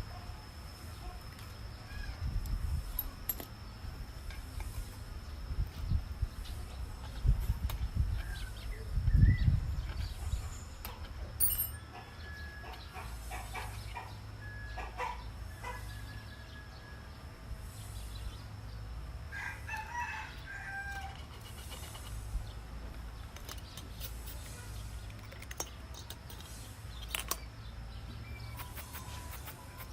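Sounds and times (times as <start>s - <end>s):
rooster crowing: 15.5s - 17.1s, 19.3s - 21.2s.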